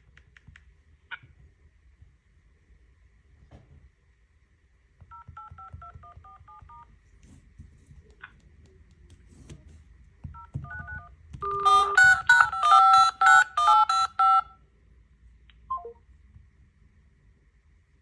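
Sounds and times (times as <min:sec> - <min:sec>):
phone ringtone beeps: 0:10.4 - 0:14.5.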